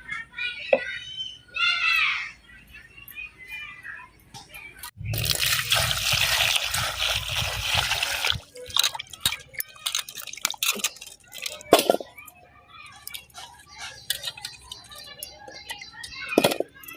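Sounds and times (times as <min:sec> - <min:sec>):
water pouring and splashing: 0:05.0 - 0:12.1
utensils clinking and knocking: 0:08.4 - 0:16.9.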